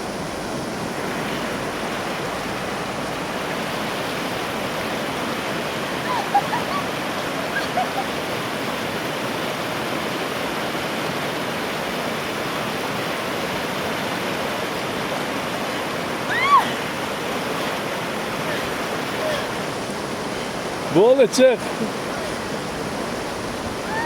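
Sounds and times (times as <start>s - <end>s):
river water rushing: 0.0s - 24.0s.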